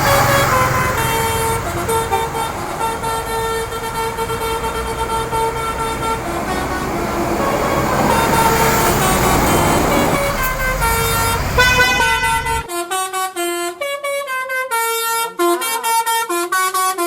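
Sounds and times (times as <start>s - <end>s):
low rumble of bus engines: 0.0s - 12.7s
bus horn blasts: 0.0s - 17.0s.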